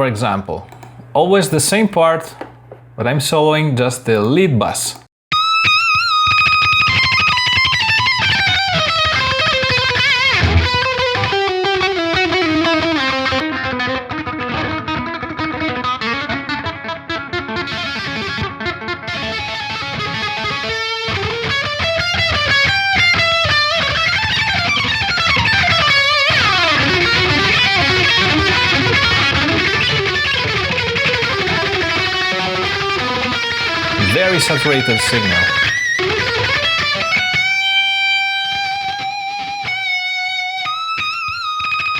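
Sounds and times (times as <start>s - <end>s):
distorted electric guitar solo: 5.4s - 11.9s, 26.2s - 36.3s.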